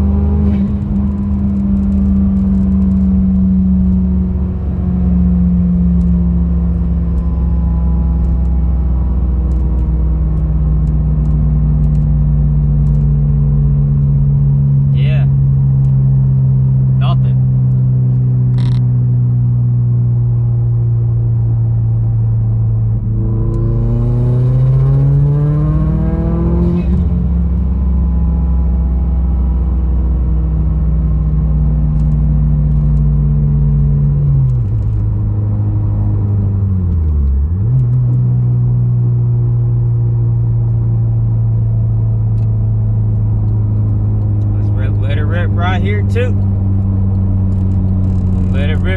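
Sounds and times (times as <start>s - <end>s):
car engine revving: 12.8s - 48.9s.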